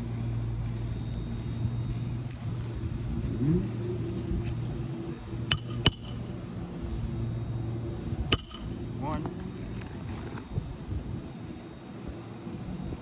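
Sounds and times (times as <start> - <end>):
engine hum: 0.0 - 13.0
hammer clinking on metal: 5.5 - 6.3, 8.3 - 8.8.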